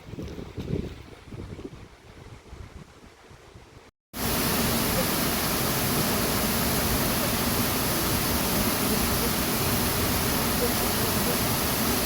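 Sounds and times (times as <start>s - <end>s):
waterfall rushing: 4.2s - 12.0s.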